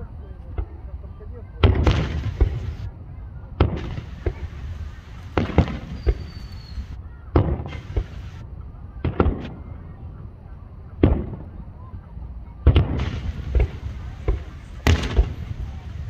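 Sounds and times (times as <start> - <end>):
fireworks booming: 1.6 - 3.0, 3.6 - 9.8, 11.0 - 11.6, 12.6 - 16.0
fireworks hissing crackle: 1.8 - 2.9, 3.7 - 8.5, 12.9 - 16.0.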